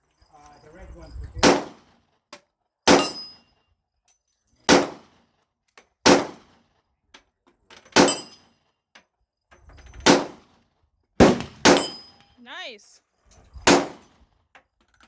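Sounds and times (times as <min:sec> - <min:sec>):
pistol shots: 0:01.4 - 0:01.8, 0:02.9 - 0:03.2, 0:04.7 - 0:05.0, 0:06.0 - 0:06.4, 0:11.2 - 0:12.1, 0:13.7 - 0:14.0.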